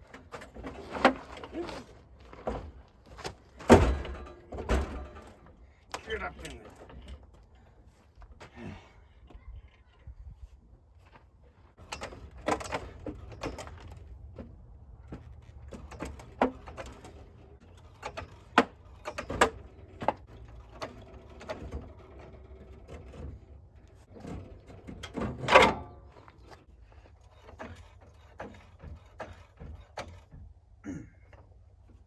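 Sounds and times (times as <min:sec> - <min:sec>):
metal clanks and scrapes: 0:00.0 - 0:07.4, 0:11.7 - 0:14.4, 0:15.2 - 0:30.4
metal clunk with ring: 0:03.7 - 0:05.4.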